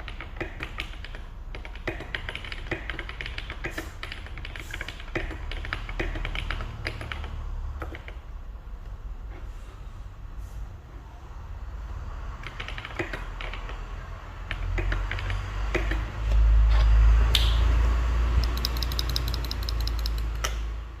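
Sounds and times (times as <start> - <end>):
mechanical keyboard typing: 0.0 - 8.2, 12.4 - 16.1, 18.4 - 20.6.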